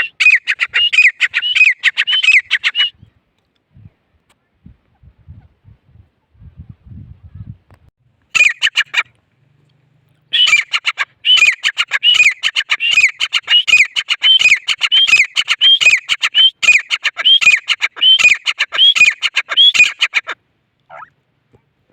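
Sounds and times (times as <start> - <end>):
bird calling harshly: 0.0 - 3.0, 8.4 - 9.1, 10.3 - 21.1.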